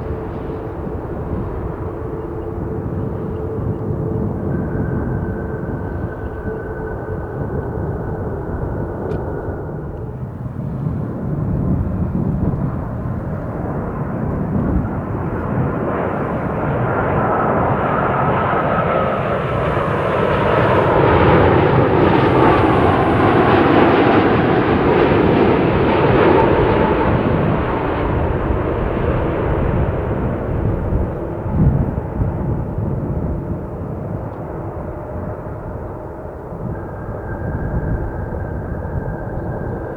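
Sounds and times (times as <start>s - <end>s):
jet airliner engine noise: 0.0s - 34.0s.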